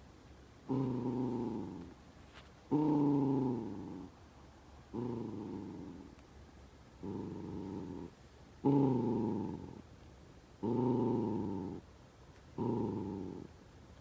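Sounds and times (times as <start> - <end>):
dog growling: 0.7 - 2.0, 2.7 - 4.1, 4.9 - 6.2, 7.0 - 9.8, 10.6 - 11.8, 12.5 - 13.6.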